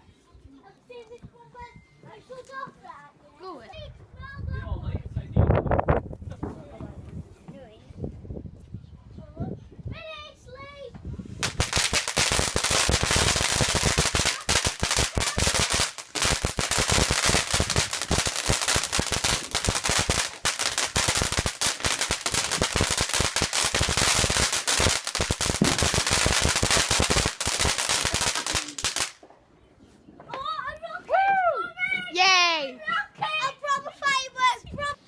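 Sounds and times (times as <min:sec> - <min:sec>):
firework crackling bangs: 0:11.4 - 0:29.3.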